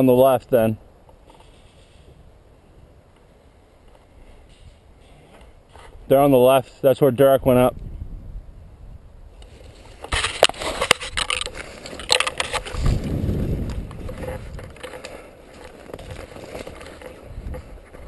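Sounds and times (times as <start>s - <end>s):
rustling and crunching leaves: 9.4s - 18.0s.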